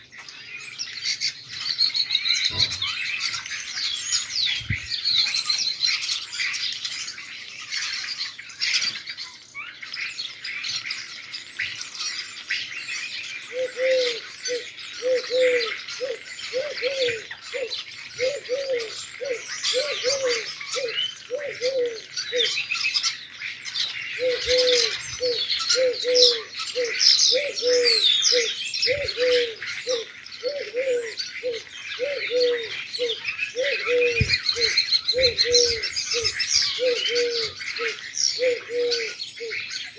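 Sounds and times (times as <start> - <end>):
songbirds chirping in chorus: 0.0 - 39.9
dove cooing: 13.5 - 22.6, 24.2 - 39.6.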